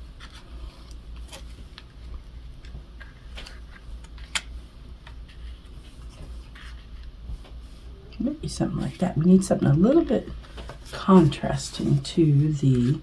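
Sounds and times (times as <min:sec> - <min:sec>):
paper rustling: 0:05.1 - 0:07.8.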